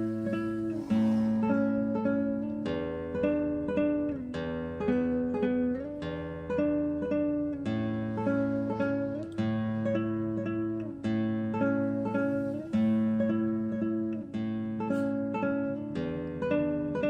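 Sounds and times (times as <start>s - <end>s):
solo classical guitar: 0.0s - 17.0s.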